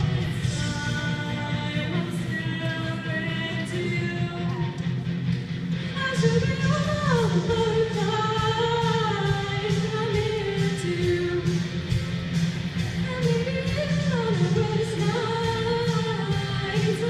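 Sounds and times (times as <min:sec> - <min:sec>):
person singing pop-rock: 0:00.0 - 0:17.0
steady drum beat: 0:05.1 - 0:17.0.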